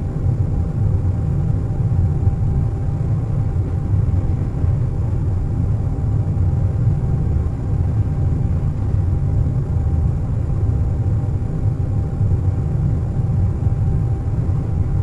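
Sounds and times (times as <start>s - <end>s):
engine and airflow roar: 0.0s - 15.0s
faint steady hum: 0.0s - 15.0s.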